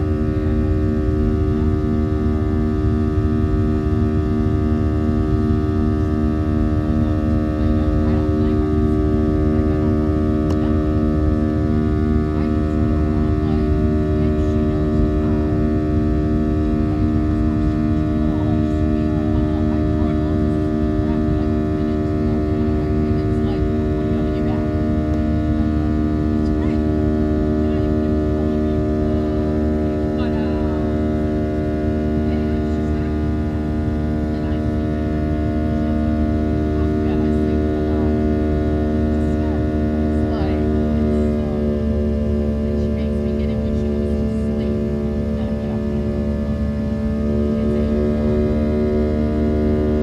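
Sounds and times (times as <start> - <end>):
faint cabin chatter: 0.0 - 50.0
jet engine drone in cabin: 0.0 - 50.0
faint voices: 6.8 - 50.0.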